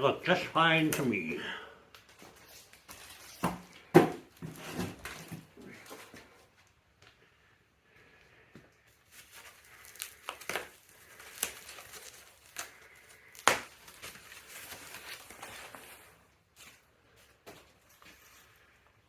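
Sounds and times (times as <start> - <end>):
wrapping crinkling and rustling: 2.0 - 6.3, 8.9 - 19.0.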